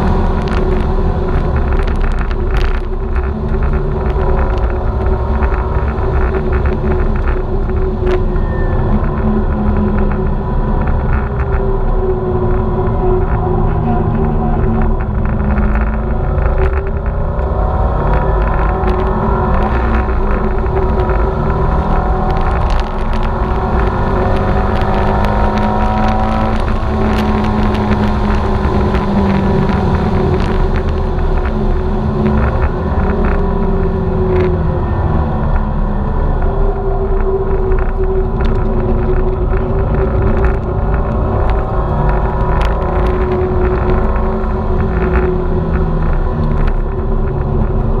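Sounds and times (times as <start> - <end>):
race car engine revving: 8.5 - 36.2.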